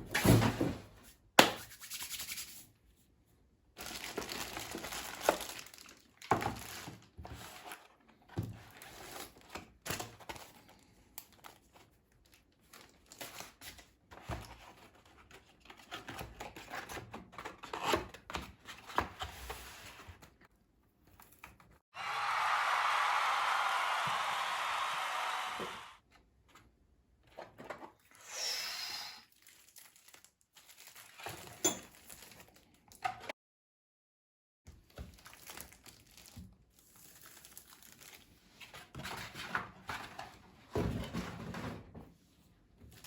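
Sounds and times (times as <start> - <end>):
wrapping crinkling and tearing: 3.8 - 7.1, 29.3 - 32.8, 35.0 - 38.4.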